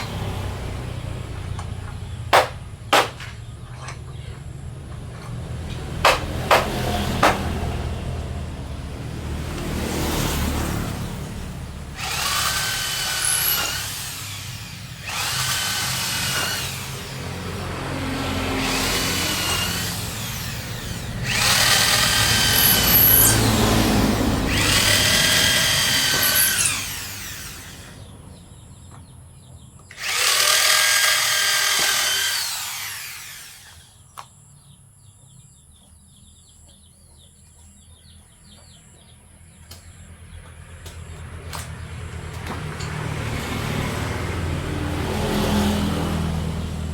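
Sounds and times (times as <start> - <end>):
power tool whining cutting wood: 11.9 - 28.1, 29.9 - 34.0.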